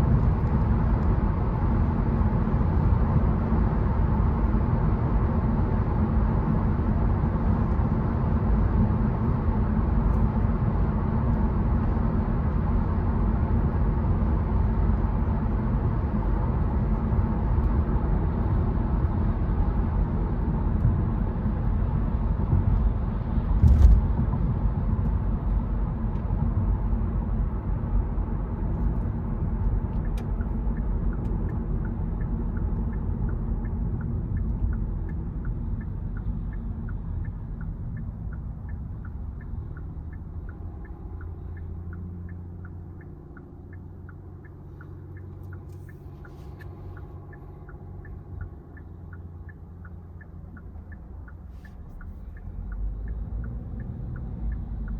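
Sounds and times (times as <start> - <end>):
car road rumble: 0.0 - 54.9
thump: 23.6 - 24.2
turn signal ticking: 28.2 - 54.9.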